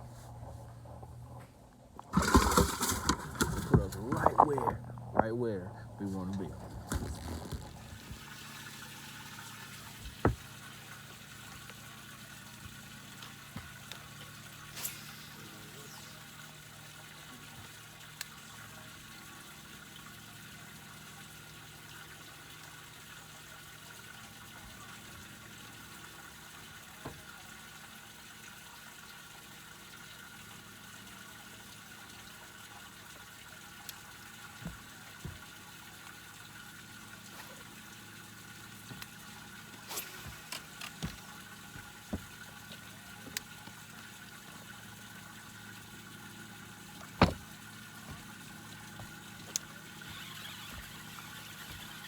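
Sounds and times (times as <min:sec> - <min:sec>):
steady low hum: 0:00.0 - 0:07.1
water wash: 0:02.1 - 0:04.8, 0:33.8 - 0:52.0.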